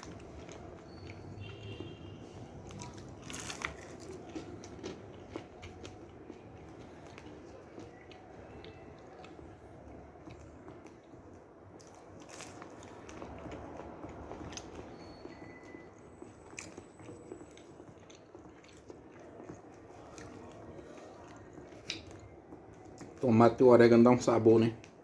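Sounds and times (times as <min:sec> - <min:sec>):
crunchy chewing: 0:00.0 - 0:23.2.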